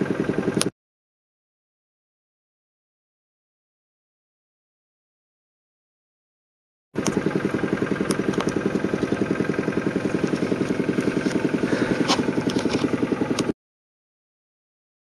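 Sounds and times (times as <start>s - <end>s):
vehicle engine idling: 7.0s - 13.5s
sharp clicks: 8.0s - 9.2s.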